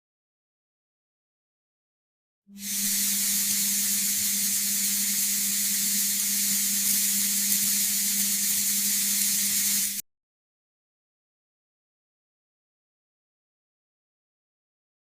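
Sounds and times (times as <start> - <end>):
steady hiss: 2.6 - 10.0.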